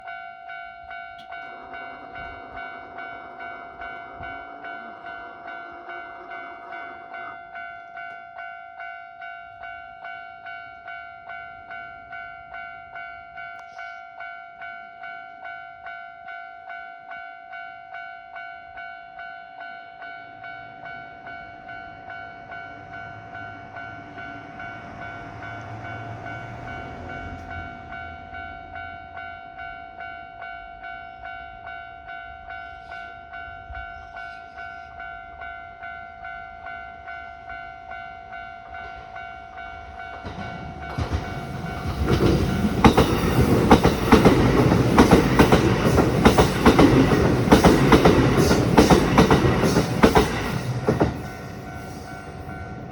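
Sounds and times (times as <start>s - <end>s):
train rumbling past: 0.0s - 14.3s, 18.8s - 52.9s
level-crossing two-tone bell: 0.0s - 52.9s.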